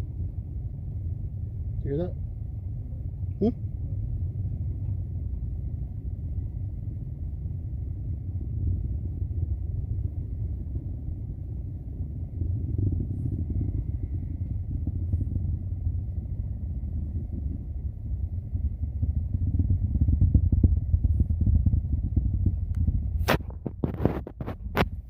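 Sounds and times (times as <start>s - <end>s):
crackling rocket rumble: 0.0s - 25.0s.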